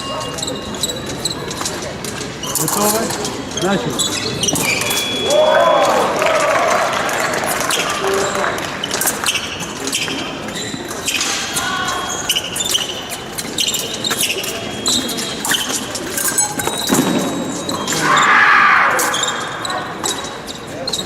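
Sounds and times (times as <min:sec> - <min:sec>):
loud shout: 0:05.2 - 0:08.1, 0:17.9 - 0:19.6.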